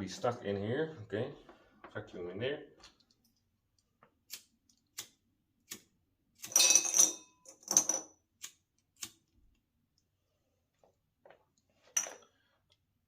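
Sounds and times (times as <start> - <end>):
glass clinks and scrapes: 6.5 - 8.1, 11.9 - 12.3.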